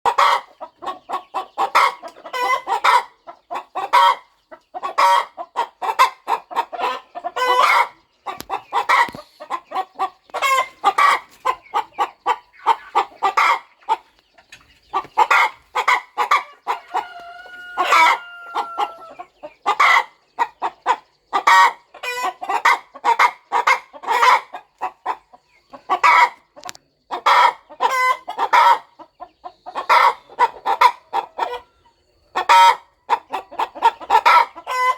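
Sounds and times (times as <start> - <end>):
hen clucking: 0.0 - 34.9.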